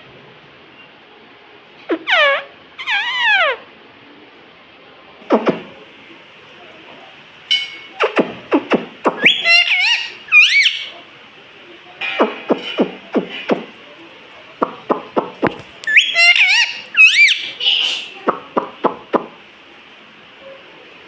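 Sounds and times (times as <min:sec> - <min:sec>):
parrot clicks and whistles: 0:09.0 - 0:09.6, 0:14.6 - 0:17.4.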